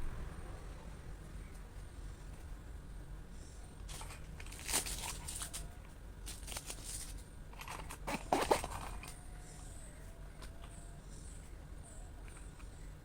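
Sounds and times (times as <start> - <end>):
gift packaging crinkling: 3.9 - 9.2.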